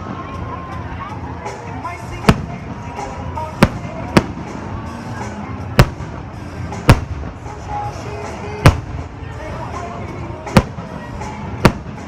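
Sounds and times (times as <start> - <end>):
crowd chatter: 0.0 - 12.0
show music: 0.0 - 12.0
fireworks bangs: 2.1 - 4.9, 5.7 - 9.2, 10.4 - 12.0.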